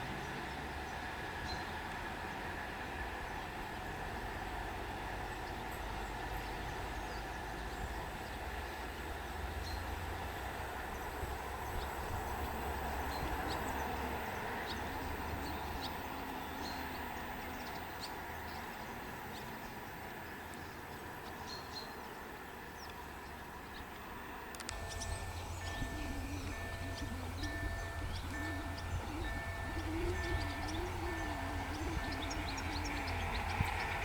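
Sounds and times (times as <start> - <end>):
diesel train rumbling on track: 0.0 - 34.0
faint bird chirps: 24.7 - 34.0.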